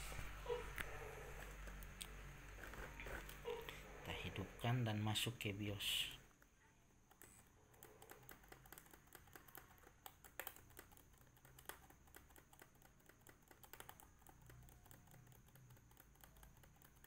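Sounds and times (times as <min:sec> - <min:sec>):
laptop key tapping: 0:07.1 - 0:17.0.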